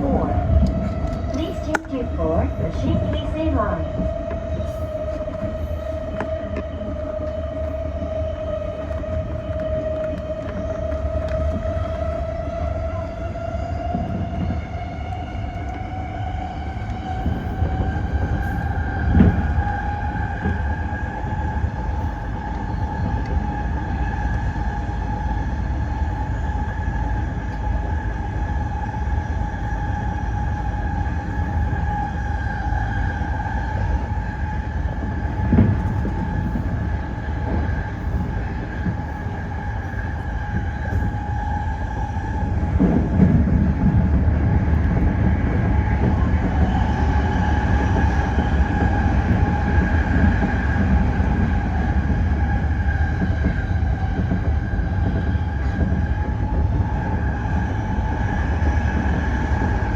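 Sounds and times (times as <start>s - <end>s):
traction motor whine: 0.0s - 59.9s
wheels rumbling: 0.0s - 59.9s
track thumps: 17.0s - 23.7s, 33.7s - 59.9s.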